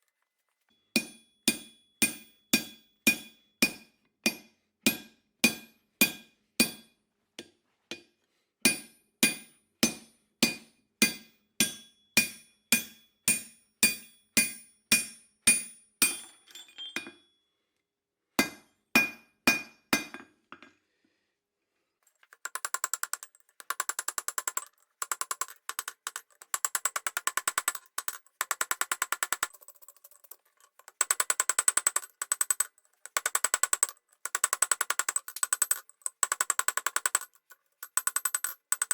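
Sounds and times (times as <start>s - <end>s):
hammer striking steel on anvil: 1.0s - 8.0s, 8.7s - 16.2s, 18.4s - 20.3s
rapid ringing clicks: 22.3s - 38.9s.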